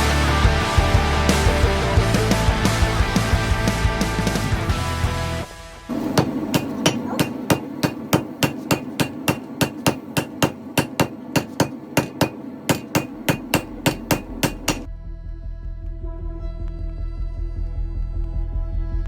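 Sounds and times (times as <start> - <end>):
hammer striking steel on anvil: 5.9 - 14.9.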